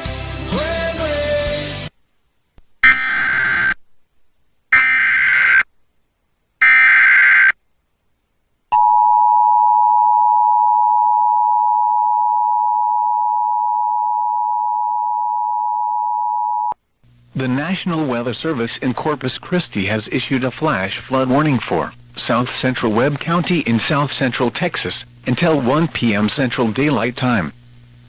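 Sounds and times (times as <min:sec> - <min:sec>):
digital data tone bursts: 0:02.8 - 0:03.8, 0:04.8 - 0:05.7
two-tone attention signal: 0:02.8 - 0:03.8.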